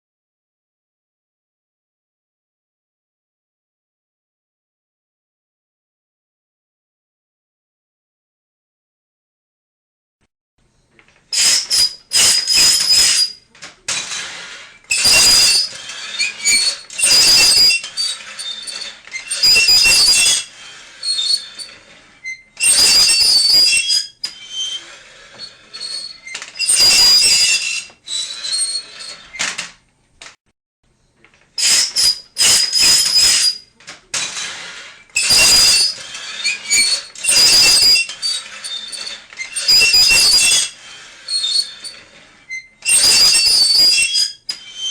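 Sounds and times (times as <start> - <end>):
high-pitched squealing scrapes: 11.3 - 29.7, 31.6 - 44.9.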